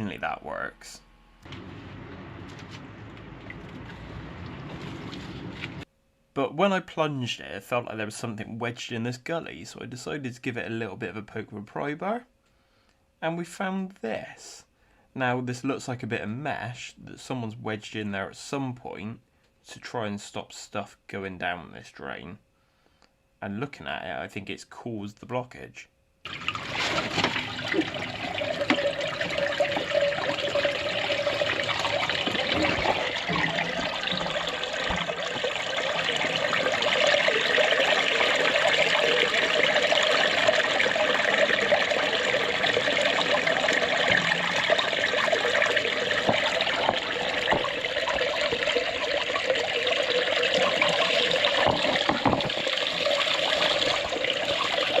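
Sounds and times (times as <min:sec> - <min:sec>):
water running into a drain: 0:26.3 - 0:55.0.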